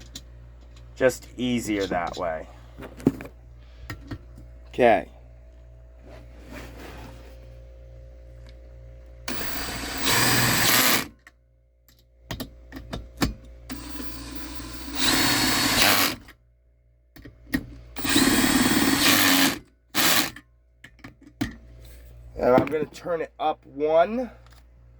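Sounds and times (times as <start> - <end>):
drill driving screws: 9.3 - 11.1, 13.7 - 16.3, 18.0 - 20.4.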